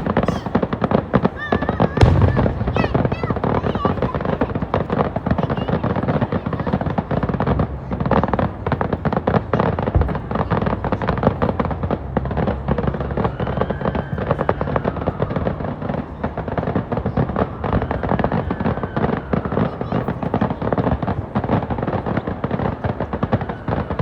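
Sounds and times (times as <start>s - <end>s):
fireworks crackling and popping: 0.0s - 13.4s
fireworks boom: 2.0s - 4.8s.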